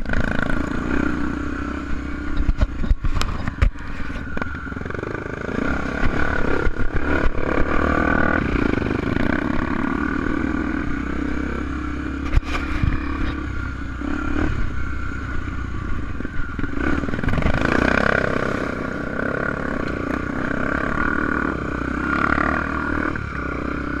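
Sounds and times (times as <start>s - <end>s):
motorcycle engine revving: 0.0s - 24.0s.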